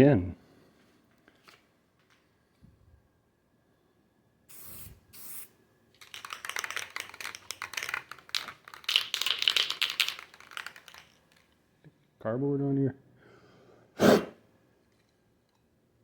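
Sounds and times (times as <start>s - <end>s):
spray paint can ball rattling: 4.5s - 11.6s.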